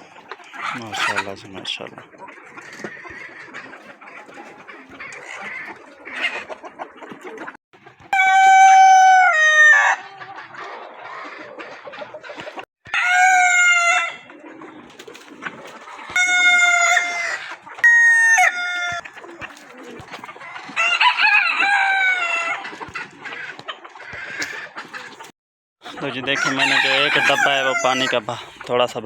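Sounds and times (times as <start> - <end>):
hens clucking: 0.0 - 29.0
roosters crowing: 2.6 - 6.8, 8.1 - 10.4, 12.9 - 25.2, 25.9 - 28.6.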